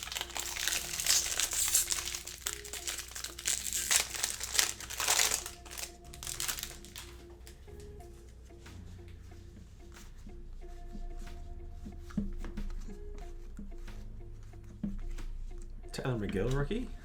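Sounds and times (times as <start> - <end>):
foil wrapper crinkling: 0.0 - 7.2
faint background music: 0.0 - 17.0.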